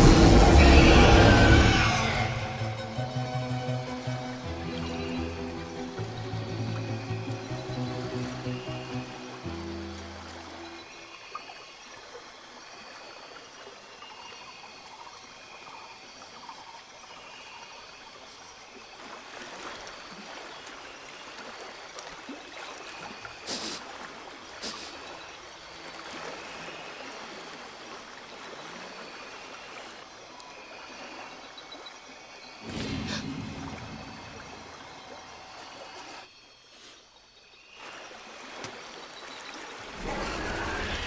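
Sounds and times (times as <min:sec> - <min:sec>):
river water flowing: 0:00.0 - 0:41.0.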